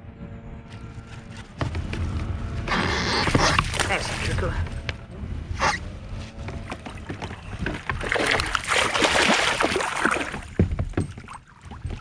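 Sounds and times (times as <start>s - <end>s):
water splashing: 3.3s - 4.6s, 6.7s - 10.6s.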